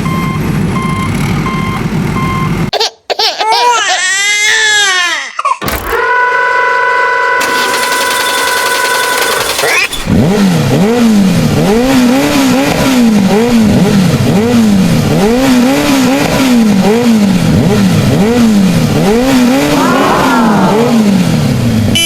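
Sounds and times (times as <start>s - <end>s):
toy vehicle engine revving: 5.6s - 11.0s, 19.0s - 21.1s
higher revving tone: 9.9s - 22.0s.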